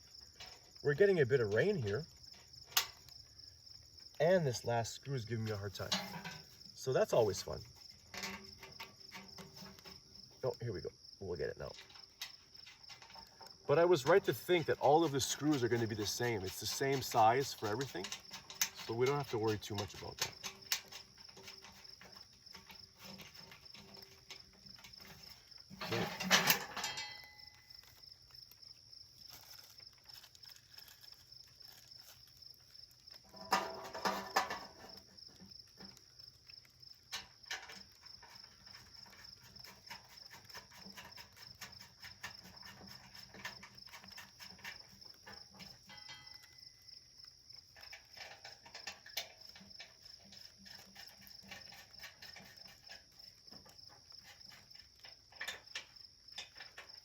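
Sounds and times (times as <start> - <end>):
handling clatter: 0.0 - 57.0
small ticks and clicks: 0.0 - 57.0
pulsing insect trill: 34.8 - 54.8.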